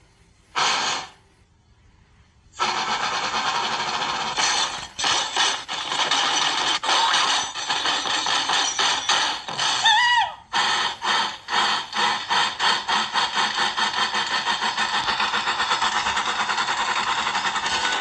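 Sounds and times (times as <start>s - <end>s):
cartoon steam train chuffing: 0.0s - 18.0s.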